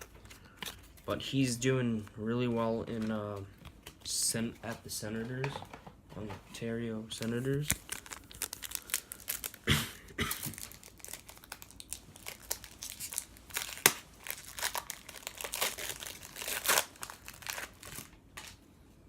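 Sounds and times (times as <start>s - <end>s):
card pack wrappers crinkling and tearing: 7.1s - 9.7s, 10.3s - 18.6s.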